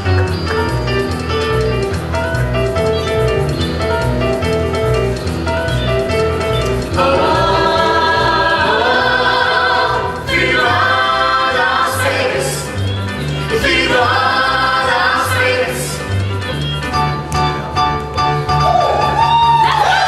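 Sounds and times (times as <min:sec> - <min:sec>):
band with stepping bass line: 0:00.0 - 0:20.0
group of voices singing chords: 0:06.8 - 0:16.2.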